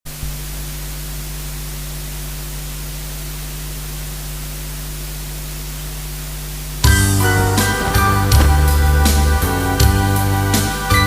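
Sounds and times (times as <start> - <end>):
low electrical hum: 0.1 - 10.4
steady hiss: 6.6 - 10.7
backing music with drums: 6.9 - 11.0.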